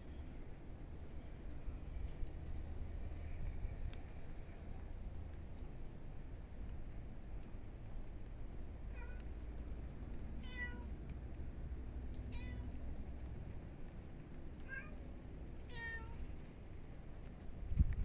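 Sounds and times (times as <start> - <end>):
wind rumble: 0.0 - 18.0
cat meowing: 8.9 - 9.2, 10.4 - 10.9, 12.3 - 12.7, 14.6 - 15.0, 15.7 - 16.2.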